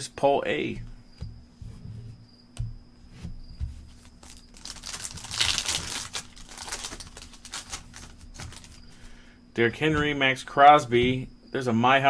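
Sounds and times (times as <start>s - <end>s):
soft knocks of card handling: 0.8s - 4.4s
card pack wrapper tearing: 4.1s - 8.9s.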